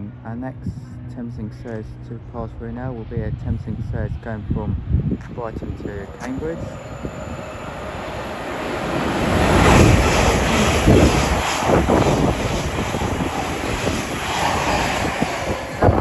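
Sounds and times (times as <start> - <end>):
train rushing through: 5.2 - 16.0.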